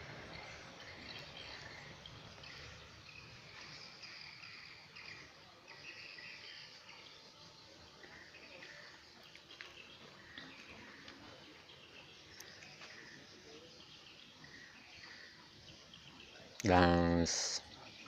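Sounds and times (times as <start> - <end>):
light steady hiss: 0.0 - 18.0.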